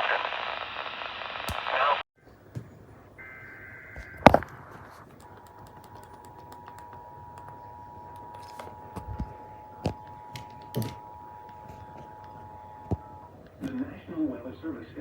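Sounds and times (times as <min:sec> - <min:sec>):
sharp clicks: 0:05.1 - 0:08.6.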